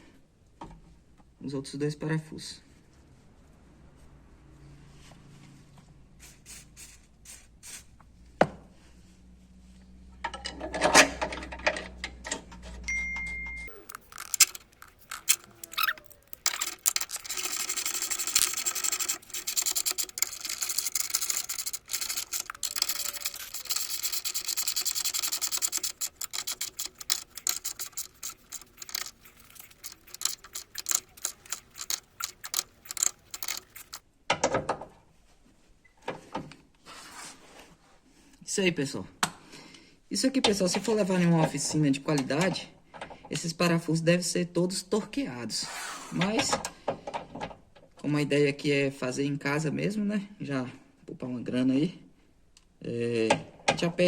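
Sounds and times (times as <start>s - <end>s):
ratchet wrench clicking: 13.7s - 34.0s.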